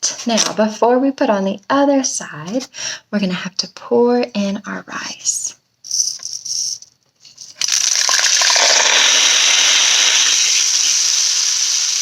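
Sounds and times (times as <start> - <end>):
rice pattering in a tube: 7.6 - 12.0.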